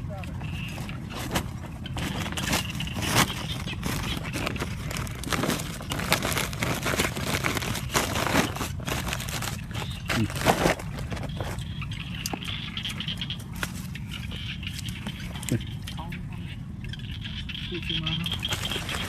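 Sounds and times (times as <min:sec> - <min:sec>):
steady low hum: 0:00.0 - 0:19.0
crinkling and rustling: 0:00.2 - 0:11.7, 0:18.4 - 0:19.0.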